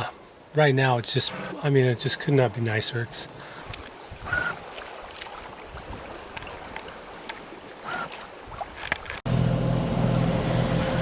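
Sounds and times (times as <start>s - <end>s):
water and breeze along hull: 0.0s - 11.0s
boat creaking: 0.9s - 9.3s.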